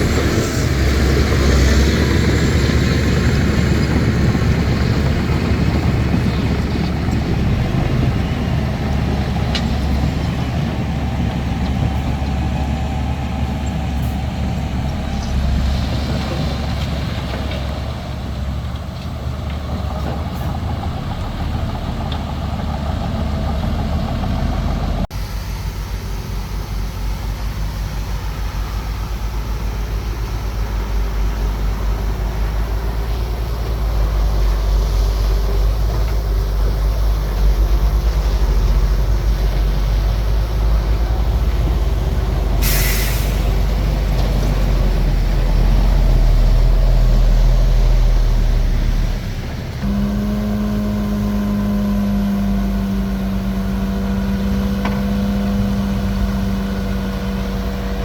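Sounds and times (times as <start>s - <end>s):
bulldozer diesel engine: 0.0s - 58.0s
air hissing burst: 42.6s - 43.8s.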